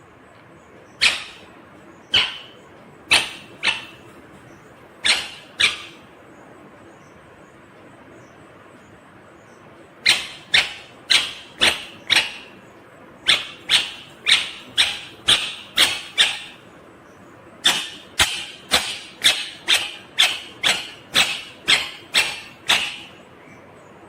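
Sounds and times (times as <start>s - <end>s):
parakeet screeching: 1.0s - 4.2s, 5.0s - 6.1s, 10.0s - 12.6s, 13.2s - 16.7s, 17.6s - 23.2s.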